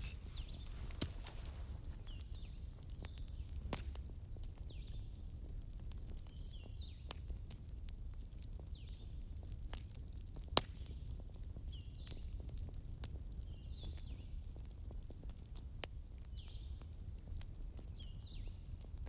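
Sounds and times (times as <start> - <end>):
fire rumbling: 0.0 - 3.6
burning wood crackling and popping: 0.0 - 19.0.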